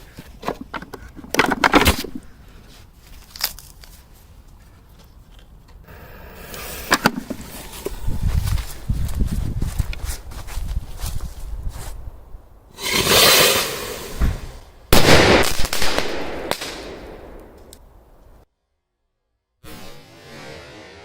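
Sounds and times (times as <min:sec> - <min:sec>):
firework hiss: 0:12.8 - 0:14.6
firework cracks: 0:12.8 - 0:17.8.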